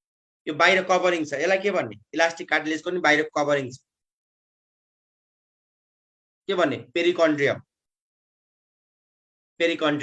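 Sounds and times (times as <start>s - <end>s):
man speaking: 6.5s - 7.7s.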